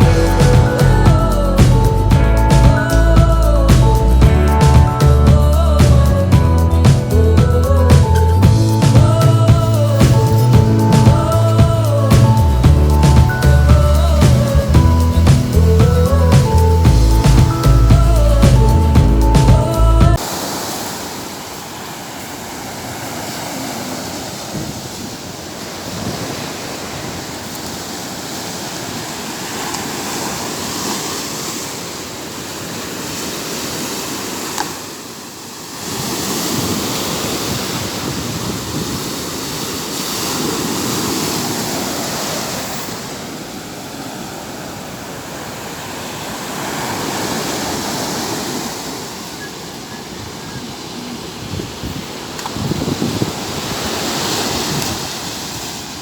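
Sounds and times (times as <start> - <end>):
sea waves breaking on beach: 8.0 - 56.0.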